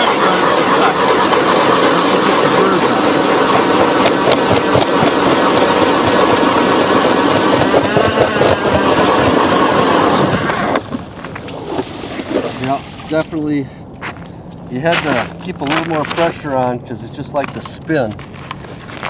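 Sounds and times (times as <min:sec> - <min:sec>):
ice auger motor whine: 0:00.0 - 0:13.3
blades grinding ice: 0:00.0 - 0:13.4, 0:17.5 - 0:19.0.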